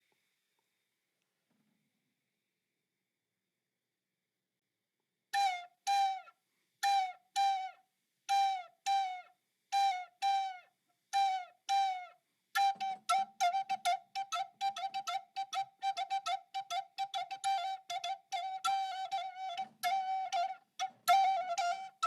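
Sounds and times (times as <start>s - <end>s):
flute short notes: 5.4s - 22.0s.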